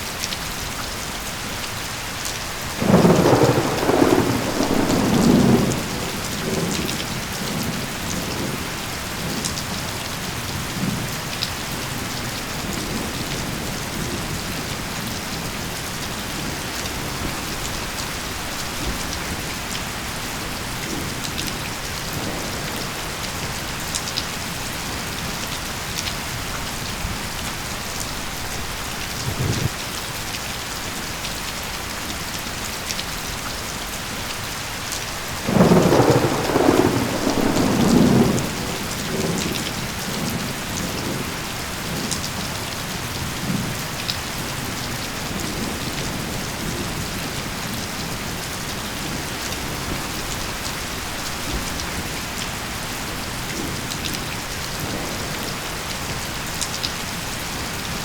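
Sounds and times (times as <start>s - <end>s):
steady rain falling: 0.0s - 58.0s
thunder rumbling: 2.8s - 9.8s, 28.3s - 29.8s, 35.4s - 42.0s.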